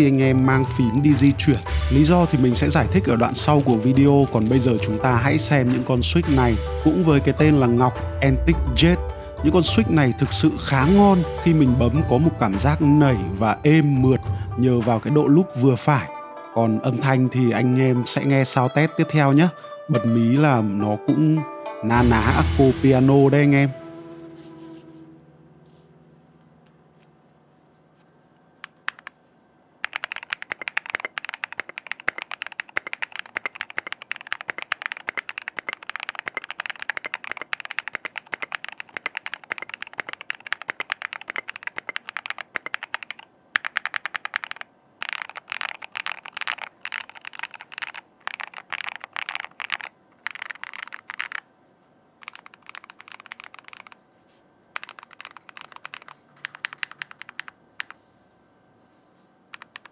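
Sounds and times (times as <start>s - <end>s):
mechanical keyboard typing: 0.0s - 5.9s, 28.6s - 29.2s, 29.8s - 51.5s, 52.2s - 54.0s, 54.8s - 58.0s, 59.5s - 59.9s.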